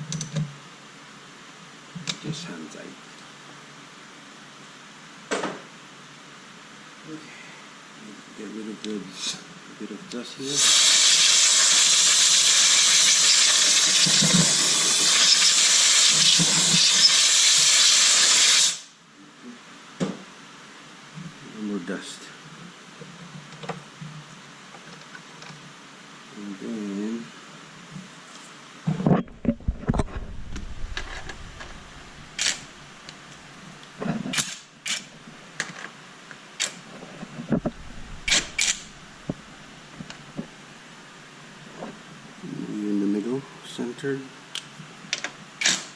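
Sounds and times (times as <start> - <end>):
compressed air hissing: 10.6 - 18.9.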